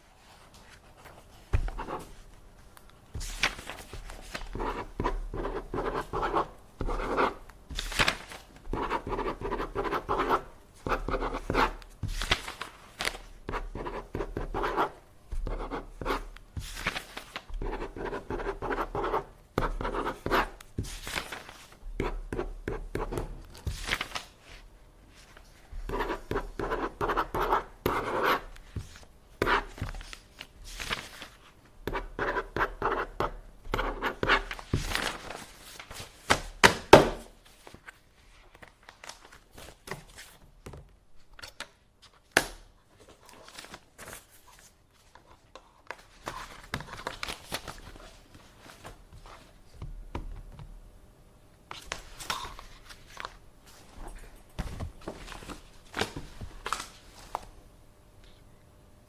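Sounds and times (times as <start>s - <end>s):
scratching on paper: 1.0s - 2.3s, 3.2s - 24.6s, 25.4s - 36.0s.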